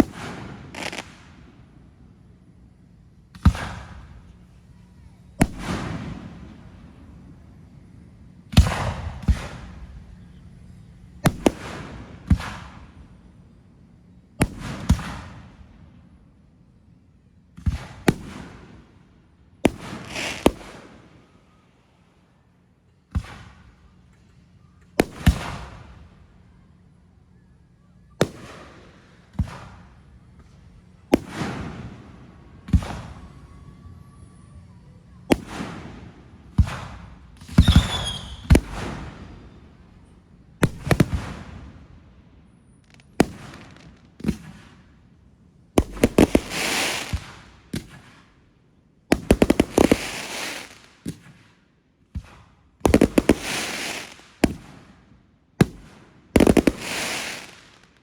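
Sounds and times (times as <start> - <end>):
fireworks bangs with rumbling tail: 0.0 - 1.6, 3.3 - 4.4, 5.4 - 6.9, 8.4 - 10.3, 11.1 - 13.2, 14.4 - 15.9, 17.5 - 18.9, 19.6 - 21.0, 23.1 - 23.7, 25.0 - 26.2, 28.2 - 33.4, 35.3 - 39.9, 40.6 - 42.0, 42.8 - 44.9, 45.7 - 48.3, 49.1 - 51.5, 52.1 - 55.0, 55.6 - 57.9.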